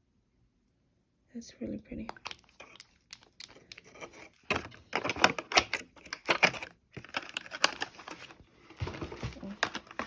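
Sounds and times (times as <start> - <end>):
plastic packaging crackling: 4.9 - 10.0.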